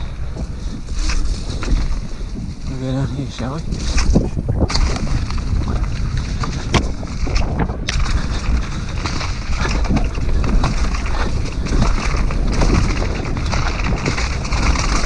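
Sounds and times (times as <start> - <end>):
wind rumble on microphone: 0.0 - 15.0
bike clicks and knocks: 3.7 - 15.0.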